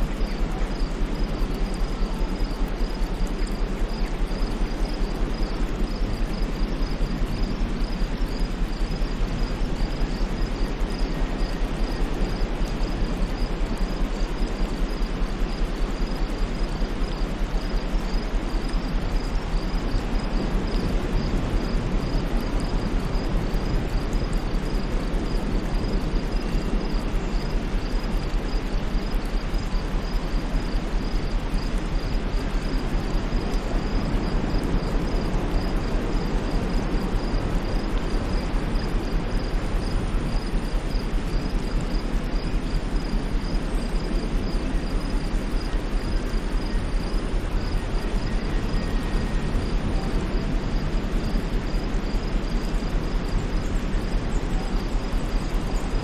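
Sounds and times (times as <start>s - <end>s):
insect chirping: 0.0s - 56.0s.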